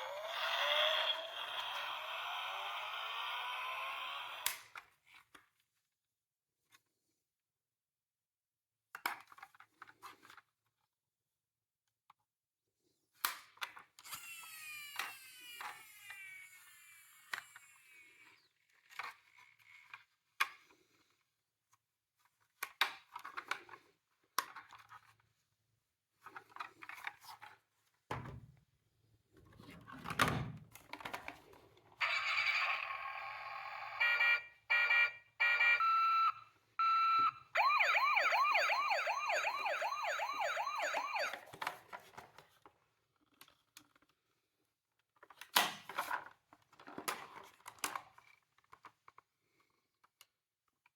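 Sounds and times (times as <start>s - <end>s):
toy electronic siren: 0.0s - 4.4s, 14.1s - 18.4s, 32.0s - 41.5s.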